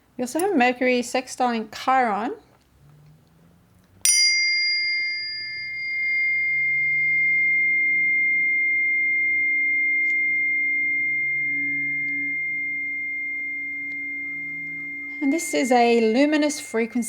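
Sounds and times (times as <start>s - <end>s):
tuning fork ringing: 4.0s - 17.0s.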